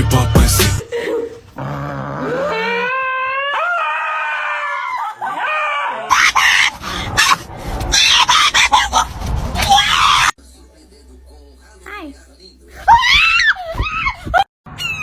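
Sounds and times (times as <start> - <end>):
animal's long wavering cry: 1.6 - 8.6.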